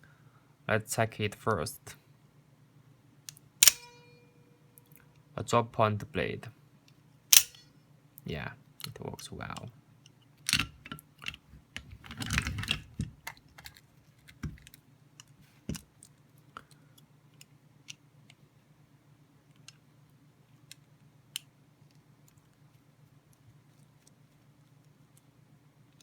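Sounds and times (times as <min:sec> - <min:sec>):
faint steady hum: 0:00.0 - 0:26.0
knife parts clicking: 0:07.4 - 0:07.6.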